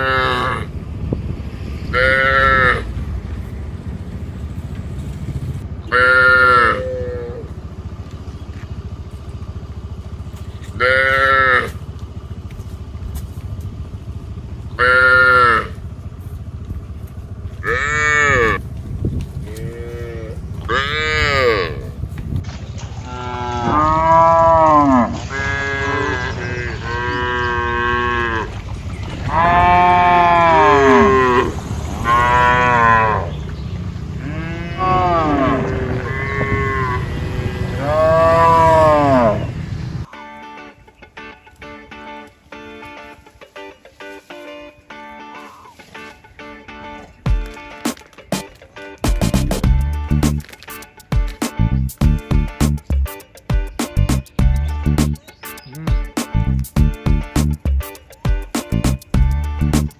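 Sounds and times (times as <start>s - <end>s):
cattle mooing: 0.0s - 0.8s, 1.8s - 3.3s, 5.9s - 7.6s, 10.7s - 11.8s, 14.7s - 15.9s, 17.5s - 18.6s, 19.4s - 22.1s, 23.0s - 40.1s.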